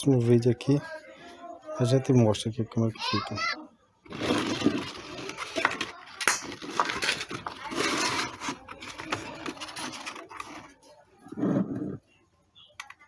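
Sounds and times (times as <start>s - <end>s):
rustling and scraping: 4.0s - 12.0s.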